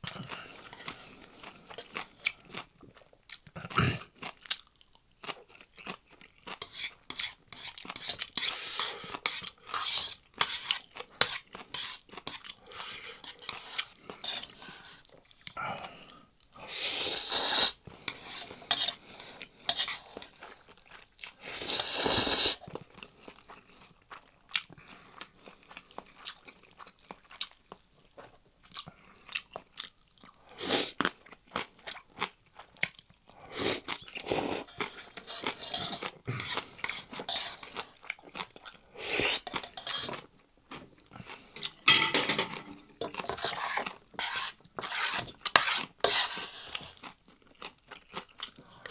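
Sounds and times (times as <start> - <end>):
chewing and crunching: 0.0 - 16.6, 17.9 - 21.5, 22.6 - 48.9
utensils clinking on bowl: 18.1 - 19.0, 34.7 - 37.8, 39.4 - 40.2, 41.6 - 44.4.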